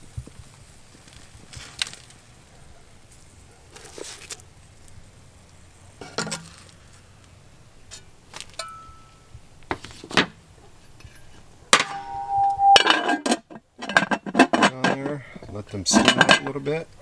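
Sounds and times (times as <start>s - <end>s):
metal tongs clinking on pot: 8.6s - 9.1s, 11.1s - 15.0s, 15.9s - 16.7s
ringing metal clank: 11.8s - 14.2s.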